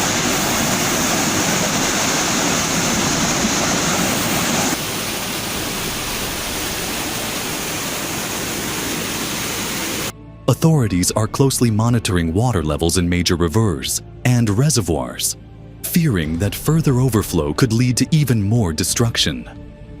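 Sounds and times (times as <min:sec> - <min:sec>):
rushing floodwater: 0:00.0 - 0:10.1.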